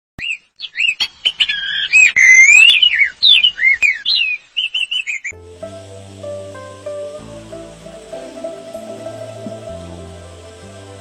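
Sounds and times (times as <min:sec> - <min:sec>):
songbirds singing: 0:00.2 - 0:05.4
background music: 0:05.4 - 0:11.0.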